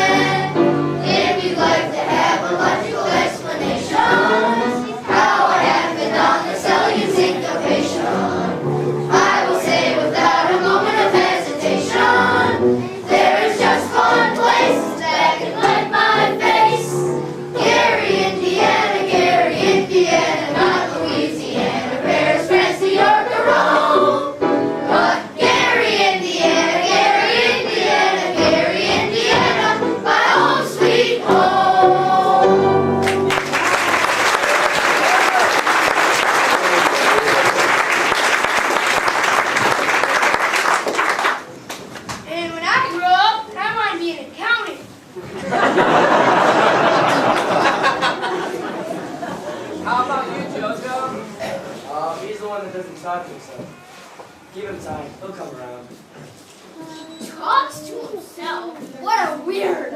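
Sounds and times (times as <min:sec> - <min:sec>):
chorus of young voices singing: 0:00.0 - 0:33.0.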